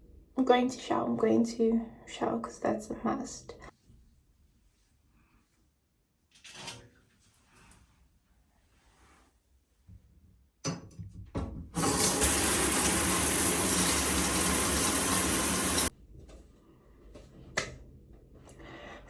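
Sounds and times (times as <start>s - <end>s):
water running hard: 11.8s - 15.9s.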